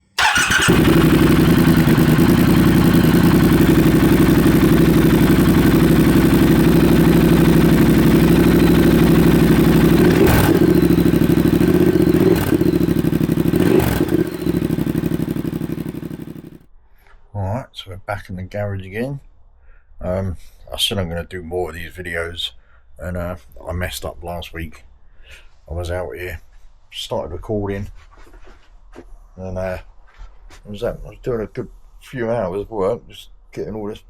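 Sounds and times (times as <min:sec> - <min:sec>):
motorcycle engine running: 0:00.2 - 0:16.6.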